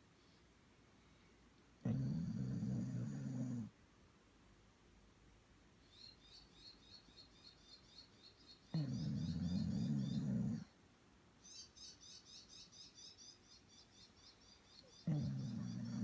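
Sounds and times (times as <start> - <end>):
low rasping snores: 1.8 - 3.7, 8.8 - 10.7, 15.1 - 16.0
faint high chirping: 5.8 - 10.6, 11.4 - 16.0.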